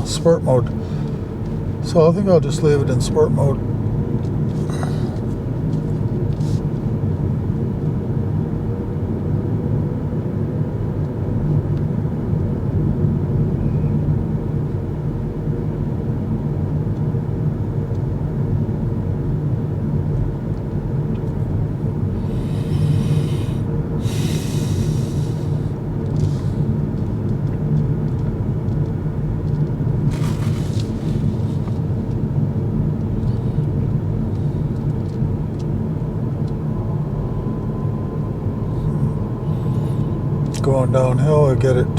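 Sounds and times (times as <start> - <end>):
road and tyre noise: 0.0 - 41.9
brief hissing: 30.2 - 31.6.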